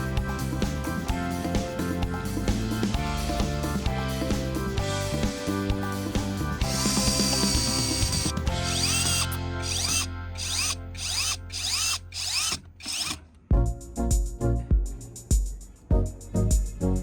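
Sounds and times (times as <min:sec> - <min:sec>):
background music: 0:00.0 - 0:17.0
power drill in short bursts: 0:06.8 - 0:13.2.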